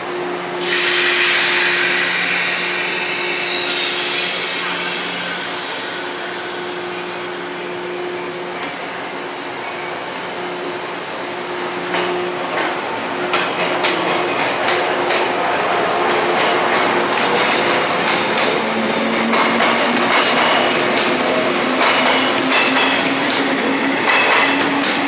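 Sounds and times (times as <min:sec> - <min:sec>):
loud hiss of air: 0:00.5 - 0:08.5.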